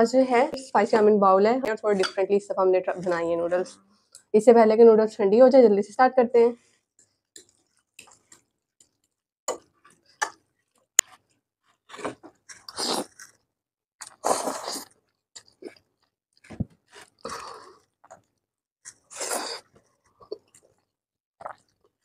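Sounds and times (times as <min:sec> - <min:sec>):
chewing and slurping noodles: 0:11.9 - 0:13.4, 0:14.0 - 0:22.0.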